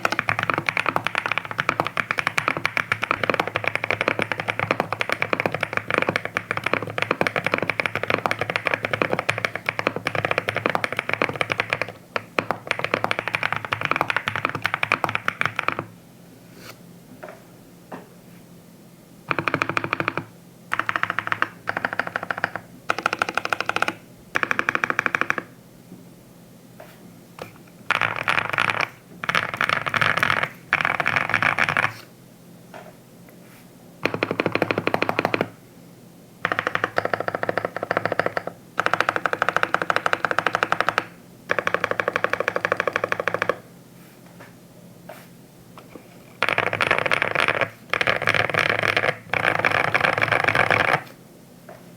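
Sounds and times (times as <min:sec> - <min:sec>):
mechanical keyboard typing: 0:00.0 - 0:15.9, 0:19.3 - 0:25.5, 0:27.9 - 0:32.0, 0:34.0 - 0:35.6, 0:36.4 - 0:43.6, 0:45.8 - 0:51.2.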